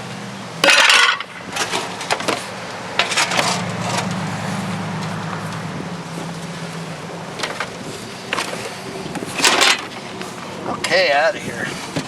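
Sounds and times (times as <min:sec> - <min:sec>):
truck engine idling: 0:00.0 - 0:12.0
scrap metal clattering: 0:00.6 - 0:04.4, 0:07.3 - 0:12.0.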